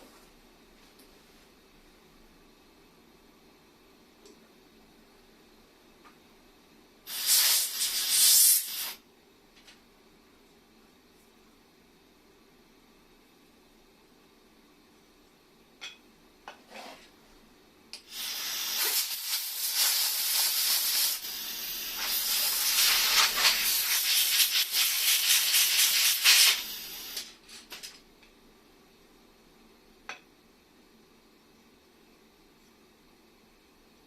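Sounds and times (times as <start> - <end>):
pressurised jet hissing from nozzle: 7.1 - 9.0, 18.1 - 27.2.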